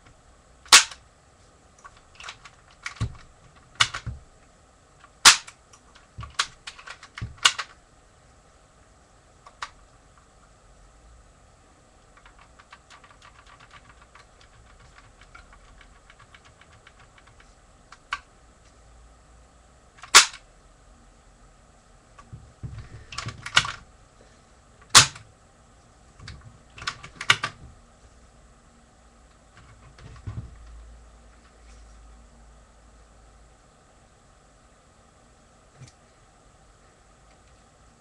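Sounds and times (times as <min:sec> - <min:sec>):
sharp loud plastic snaps: 0:00.6 - 0:01.0, 0:05.1 - 0:05.6, 0:06.2 - 0:07.8, 0:20.0 - 0:20.4, 0:24.8 - 0:25.3
rapid light plastic clicks: 0:01.8 - 0:04.2.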